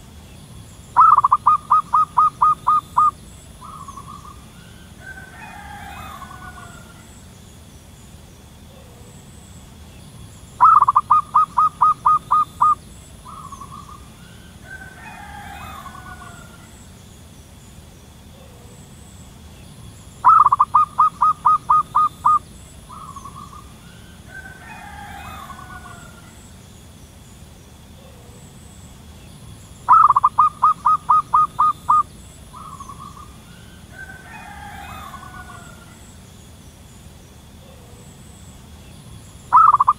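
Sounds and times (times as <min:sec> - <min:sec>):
soft bird calls: 0:00.0 - 0:39.9
dove cooing: 0:00.9 - 0:07.3, 0:10.6 - 0:16.9, 0:20.2 - 0:26.4, 0:29.9 - 0:36.1, 0:39.5 - 0:39.9.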